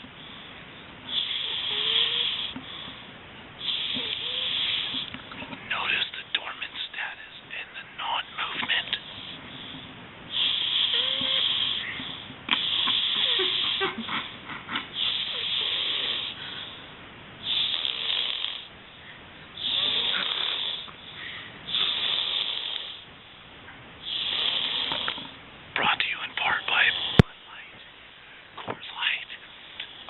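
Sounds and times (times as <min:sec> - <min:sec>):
rasping snoring: 0:01.1 - 0:02.6, 0:03.6 - 0:05.1, 0:10.3 - 0:14.3, 0:15.0 - 0:16.4, 0:17.4 - 0:18.7, 0:19.6 - 0:20.9, 0:21.7 - 0:23.0, 0:24.0 - 0:25.3, 0:26.6 - 0:27.3.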